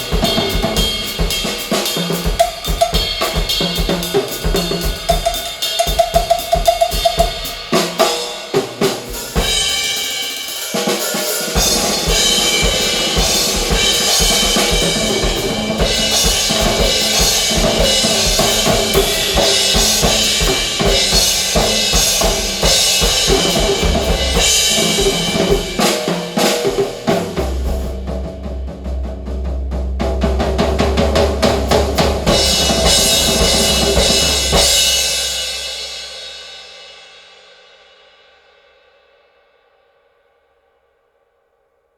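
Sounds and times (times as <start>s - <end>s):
drum kit playing: 0.0s - 36.9s
pitched music: 10.8s - 26.0s.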